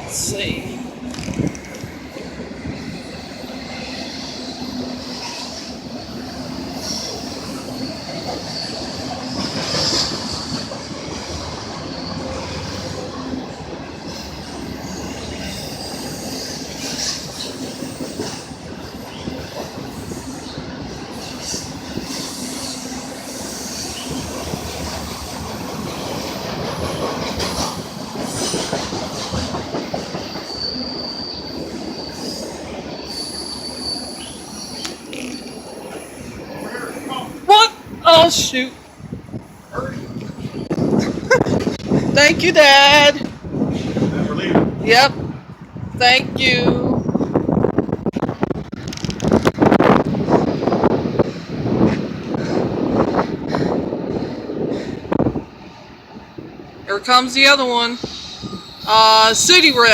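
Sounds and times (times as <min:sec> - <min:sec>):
train wheels clacking on rails: 0:01.1 - 0:36.9, 0:48.8 - 0:55.8
high wheel squeal: 0:30.2 - 0:37.3, 0:57.9 - 0:59.9.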